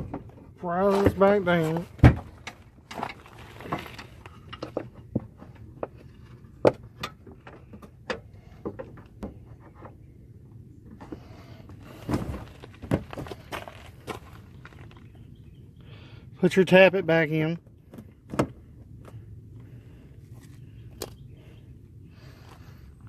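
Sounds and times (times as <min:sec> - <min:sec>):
louder thunks: 0:01.9 - 0:02.4.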